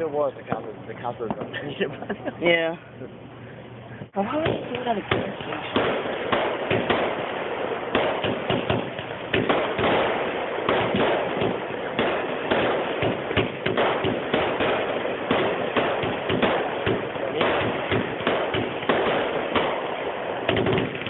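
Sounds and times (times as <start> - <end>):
steady crackling hiss: 0.0 - 21.0
fireworks pops and crackles: 0.4 - 1.8, 4.3 - 21.0.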